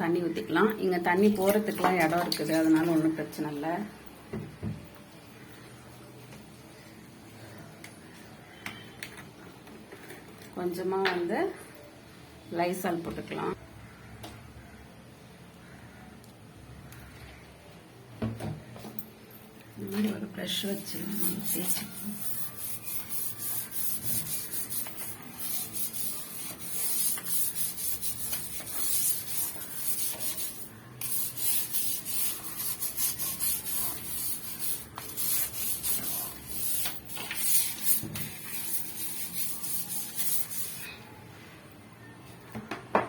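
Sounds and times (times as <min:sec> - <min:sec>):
stiff brush scrubbing wet floor: 0:20.8 - 0:40.8.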